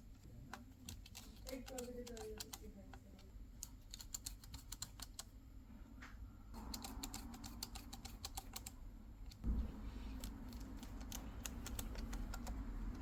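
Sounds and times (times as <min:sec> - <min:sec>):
rapid light clicks: 0:10.2 - 0:13.0.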